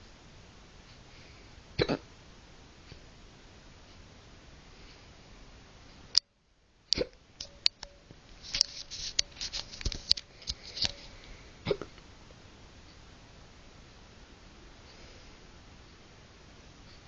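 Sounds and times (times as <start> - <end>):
person hiccuping: 1.8 - 2.1, 6.9 - 7.2, 11.6 - 12.0.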